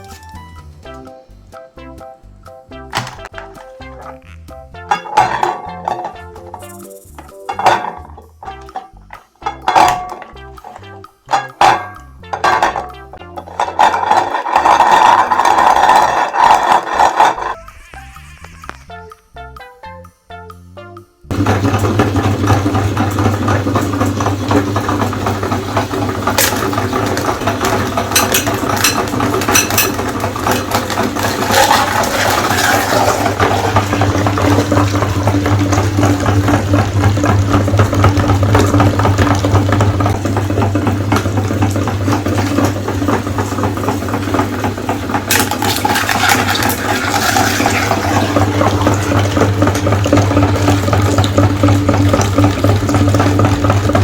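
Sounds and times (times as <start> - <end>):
meat grinder motor humming: 13.8 - 17.9, 21.3 - 54.0.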